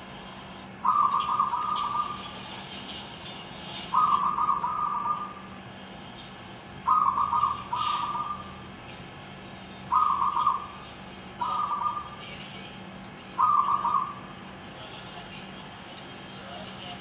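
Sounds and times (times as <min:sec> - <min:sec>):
doves cooing: 0:00.8 - 0:02.4, 0:03.9 - 0:05.6, 0:06.9 - 0:08.6, 0:09.9 - 0:10.8, 0:11.4 - 0:12.2, 0:13.4 - 0:14.4.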